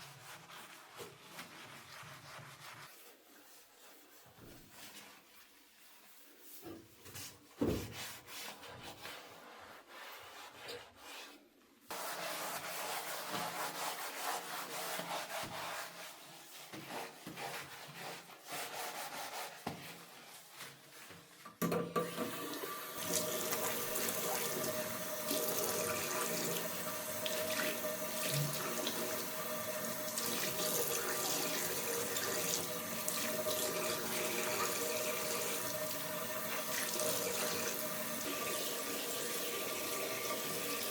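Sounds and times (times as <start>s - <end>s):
tap water running into basin: 21.8s - 40.9s.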